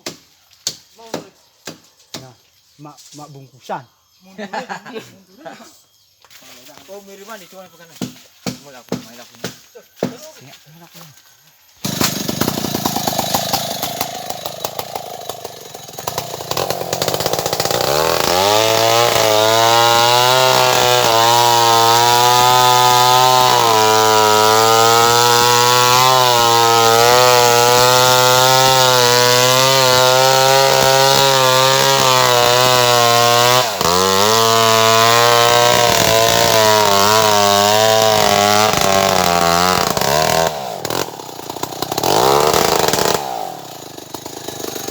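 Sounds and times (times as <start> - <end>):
chainsaw cutting wood: 11.7 - 44.9.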